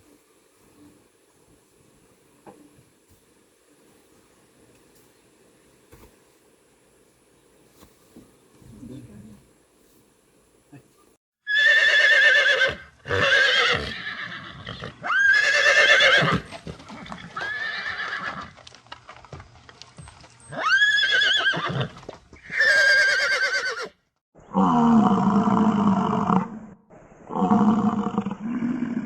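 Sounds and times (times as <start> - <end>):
horse whinnying: 11.5 - 18.5, 20.5 - 26.4.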